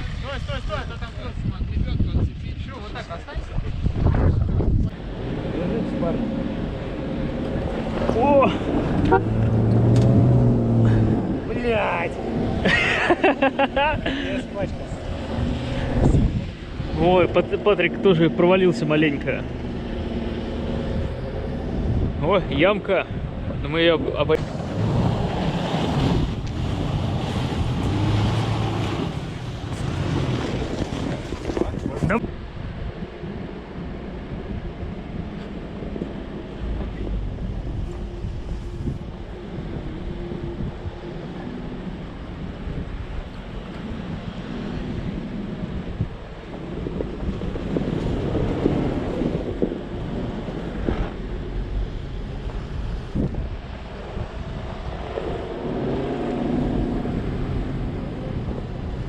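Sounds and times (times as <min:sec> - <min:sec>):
road and wind noise: 0:00.0 - 0:59.0
off-road vehicle engine running: 0:04.8 - 0:22.2, 0:24.4 - 0:32.2.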